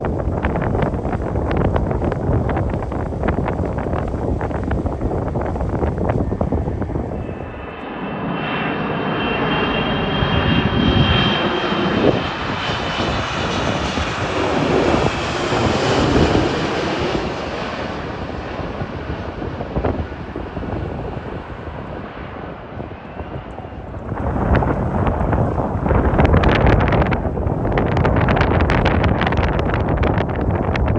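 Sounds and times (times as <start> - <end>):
high whine: 0.0 - 20.8
jet engine roar: 0.0 - 30.9.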